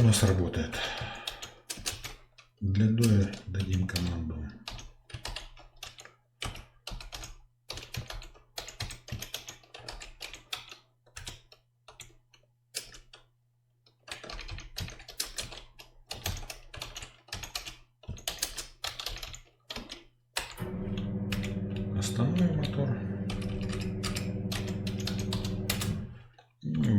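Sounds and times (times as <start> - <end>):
computer keyboard typing: 0.8 - 13.3, 13.9 - 26.9
electric curtain motor humming: 20.6 - 26.2.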